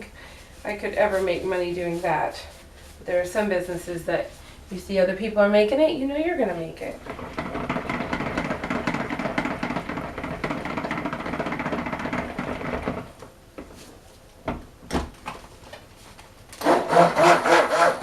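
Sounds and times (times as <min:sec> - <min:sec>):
stick blender running: 0:06.9 - 0:13.1, 0:16.6 - 0:18.0.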